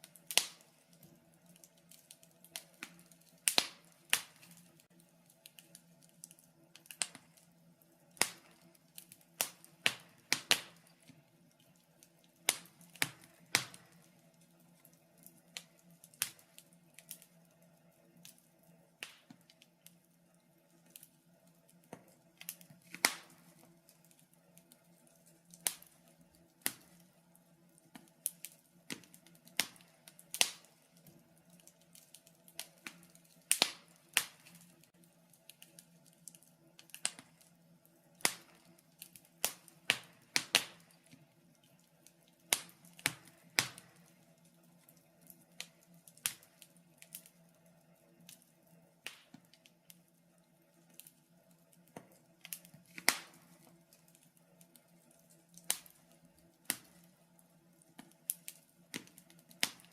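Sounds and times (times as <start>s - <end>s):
faint steady hum: 0.0s - 59.9s
wood fire crackling: 0.0s - 59.9s.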